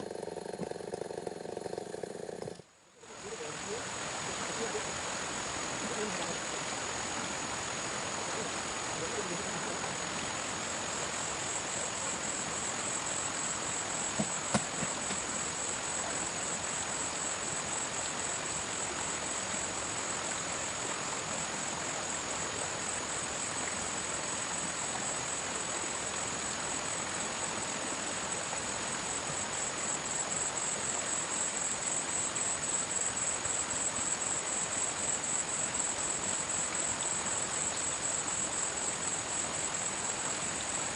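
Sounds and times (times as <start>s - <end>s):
background hiss: 0.0s - 40.9s
insects chirring: 0.0s - 40.9s
soft knocks: 14.2s - 15.2s.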